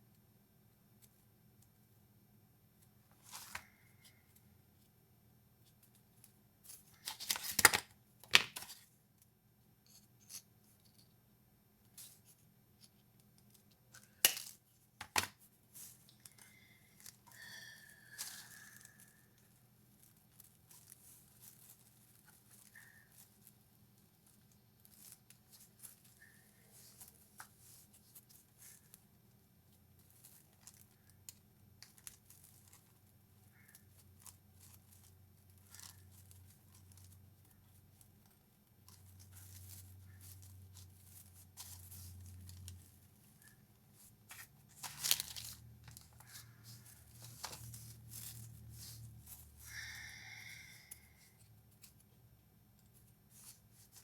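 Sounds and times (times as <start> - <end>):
faint low hum: 0.0 - 54.0
craft materials rustling: 32.0 - 50.0.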